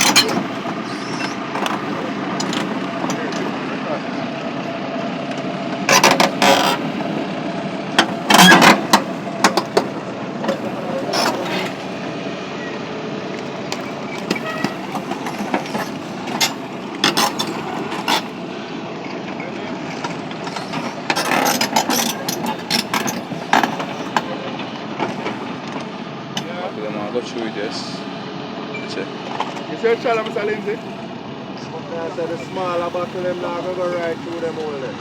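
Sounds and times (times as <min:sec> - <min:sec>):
debris clattering and knocking: 0:00.0 - 0:03.6, 0:08.0 - 0:11.9, 0:13.7 - 0:18.4, 0:19.1 - 0:24.4
excavator engine running: 0:00.0 - 0:35.0.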